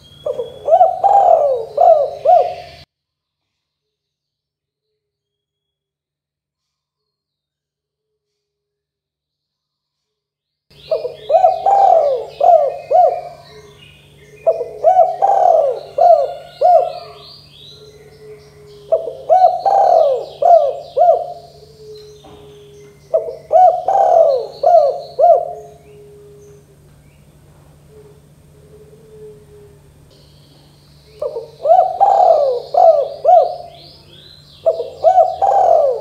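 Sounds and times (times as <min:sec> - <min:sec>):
dove cooing: 0:00.0 - 0:02.8, 0:10.8 - 0:36.0
low steady hum: 0:00.0 - 0:02.9, 0:10.7 - 0:36.0
faint high chirping: 0:10.7 - 0:36.0.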